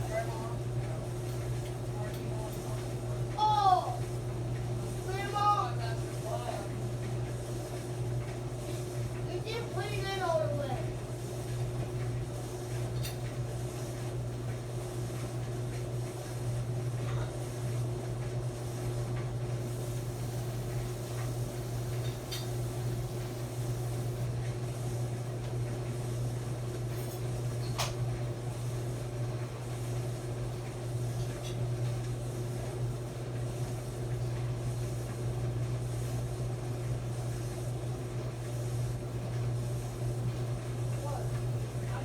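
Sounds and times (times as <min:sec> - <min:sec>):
clothes dryer humming: 0:00.0 - 0:42.0.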